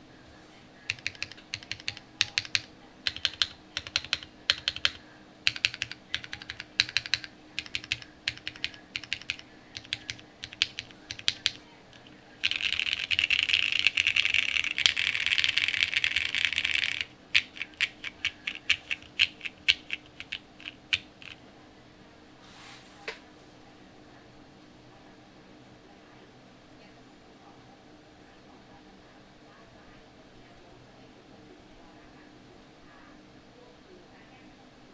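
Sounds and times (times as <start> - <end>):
mechanical keyboard typing: 0.9 - 21.4.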